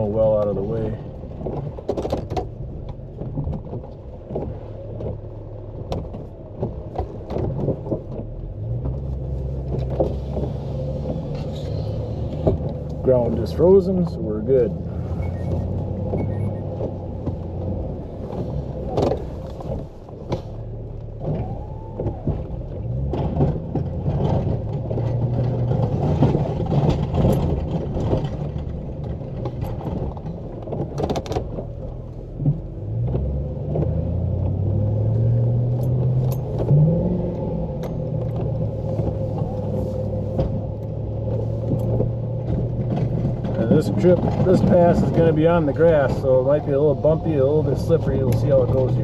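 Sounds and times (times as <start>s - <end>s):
knocks and rattles from plow: 0.0s - 49.0s
pickup truck engine revving: 32.4s - 49.0s.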